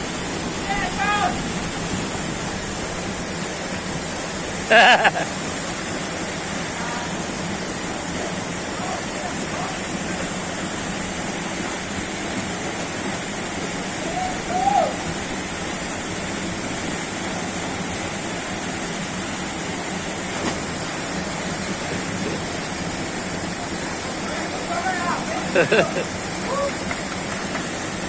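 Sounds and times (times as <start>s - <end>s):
waterfall rushing: 0.0s - 28.0s
person shouting: 0.6s - 1.4s, 14.0s - 15.0s, 26.4s - 26.9s.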